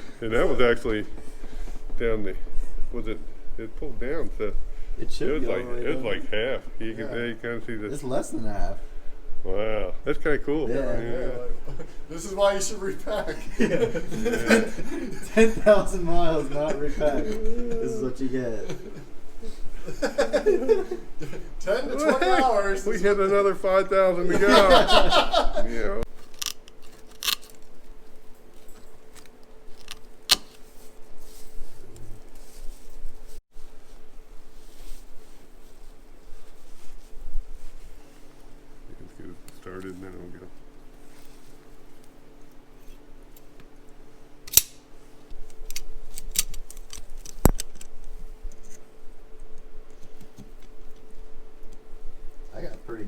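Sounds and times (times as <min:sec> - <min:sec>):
faint steady hum: 0:00.0 - 0:53.0
sharp click: 0:44.5 - 0:44.8.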